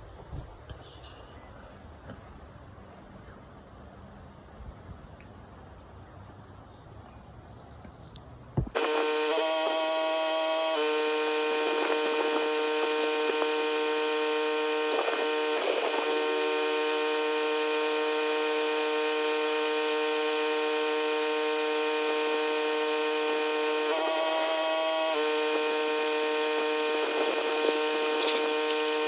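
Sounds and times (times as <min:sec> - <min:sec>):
pressure washer engine buzzing: 0:08.7 - 0:29.0.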